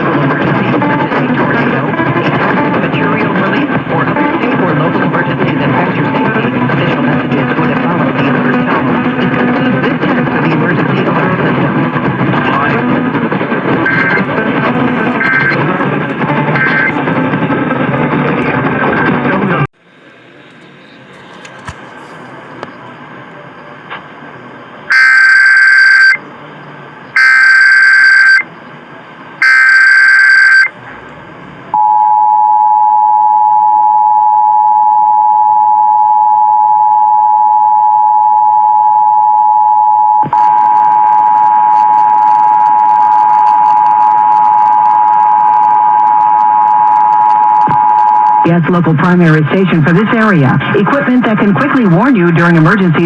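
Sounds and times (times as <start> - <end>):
music on radio: 0.0 - 24.1, 24.9 - 26.4, 27.2 - 28.5, 29.4 - 30.8
faint radio static: 10.0 - 31.9
two-tone attention signal: 13.9 - 14.3, 15.1 - 15.6, 16.4 - 17.0, 24.9 - 26.2, 27.2 - 28.5, 29.4 - 30.7
buzzy data bursts: 15.1 - 15.6, 24.9 - 26.2, 27.2 - 28.4, 29.4 - 30.7.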